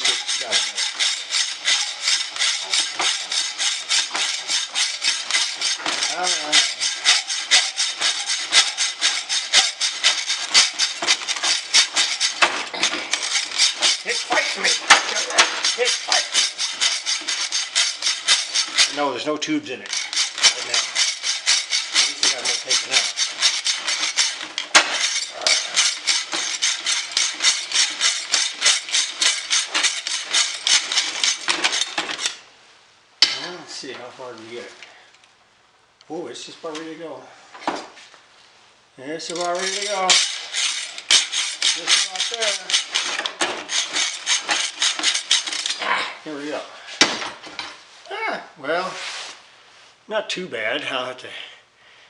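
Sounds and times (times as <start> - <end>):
hacksaw rasping through metal: 0.0 - 32.4, 39.2 - 45.8.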